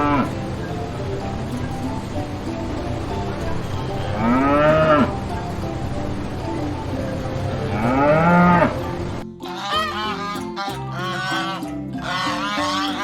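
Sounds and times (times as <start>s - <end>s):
animal mooing: 0.0s - 0.4s, 4.0s - 5.3s, 7.6s - 13.0s
background music: 0.0s - 13.0s
plucked melody: 0.0s - 13.0s.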